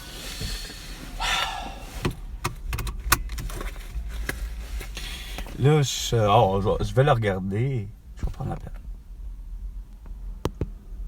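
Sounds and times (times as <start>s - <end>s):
rustle: 0.0s - 6.1s.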